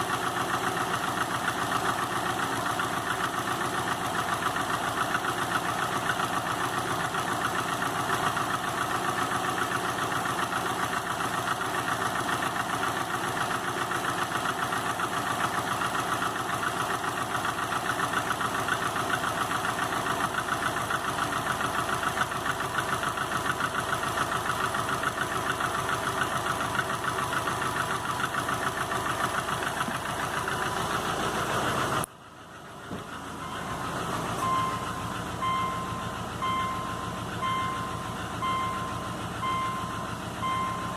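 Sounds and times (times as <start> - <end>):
car engine knocking: 0.0 - 40.9
short electronic beeps: 33.4 - 40.9.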